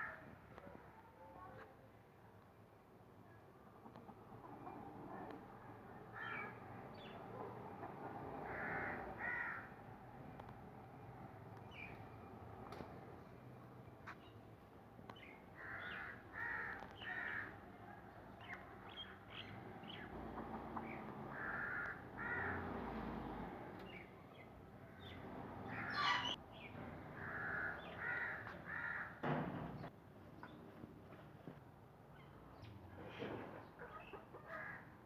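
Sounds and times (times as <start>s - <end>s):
faint outdoor background: 0.0s - 35.0s
harsh bird calls: 15.2s - 17.6s, 18.4s - 22.7s, 23.9s - 29.2s.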